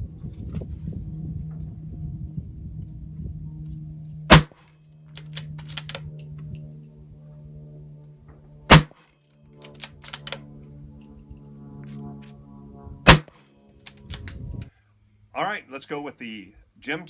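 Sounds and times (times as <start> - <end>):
rifle shots: 4.3 - 4.6, 8.7 - 9.0, 13.1 - 13.4.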